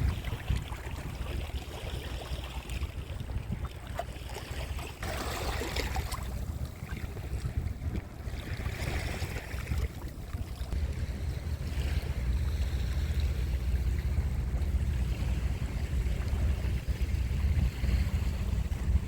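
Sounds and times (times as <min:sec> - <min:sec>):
wind rumble on microphone: 0:00.0 - 0:19.0
sea surf washing on shore: 0:04.5 - 0:19.0.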